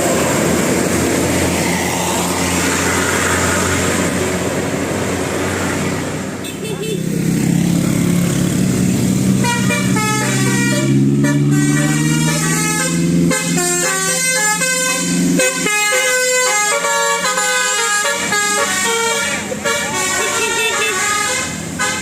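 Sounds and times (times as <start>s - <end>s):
bus multi-tone horn melody: 6.4s - 7.2s, 8.9s - 22.0s.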